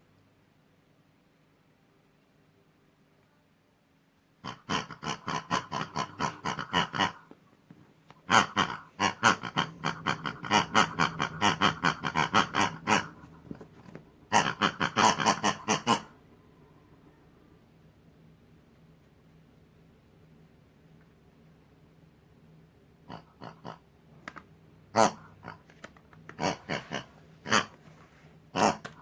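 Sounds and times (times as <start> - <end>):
pig-like oinking grunts: 4.4 - 7.3, 8.3 - 13.4, 14.3 - 16.2, 23.0 - 23.8, 24.9 - 25.6, 26.3 - 27.8, 28.5 - 29.0.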